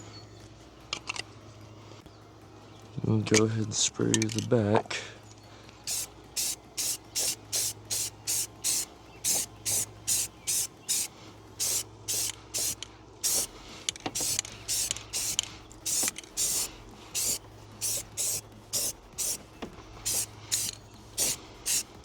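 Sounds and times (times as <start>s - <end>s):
spray paint can hissing: 5.8s - 22.0s.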